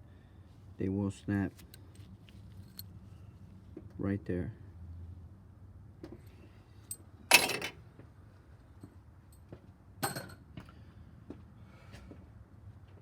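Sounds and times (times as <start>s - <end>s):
metallic clanks: 7.3s - 7.8s.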